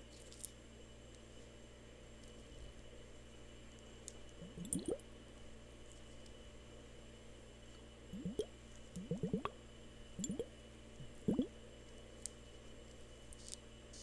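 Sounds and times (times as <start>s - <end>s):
faint steady hum: 0.0s - 14.0s
water drops plopping: 4.4s - 5.0s, 8.2s - 9.5s, 10.2s - 11.5s.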